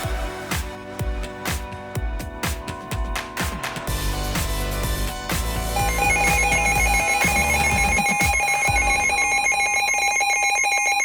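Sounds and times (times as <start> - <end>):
background music: 0.0 - 10.3
warbling electronic alert tone: 3.9 - 11.0.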